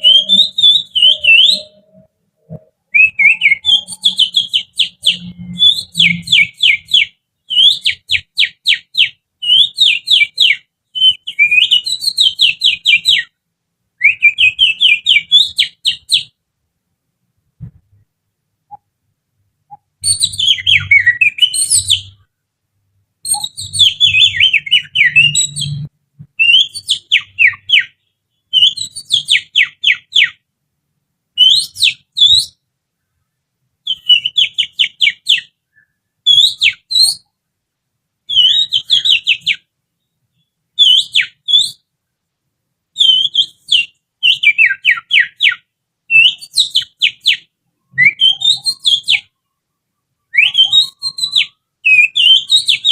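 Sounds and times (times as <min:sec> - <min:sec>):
finger whistling birdsong imitation: 0:00.0 - 0:13.4, 0:14.0 - 0:16.3, 0:19.7 - 0:22.3, 0:23.2 - 0:30.4, 0:31.4 - 0:32.6, 0:33.9 - 0:37.3, 0:38.3 - 0:39.7, 0:40.8 - 0:41.8, 0:43.0 - 0:49.4, 0:50.3 - 0:52.9.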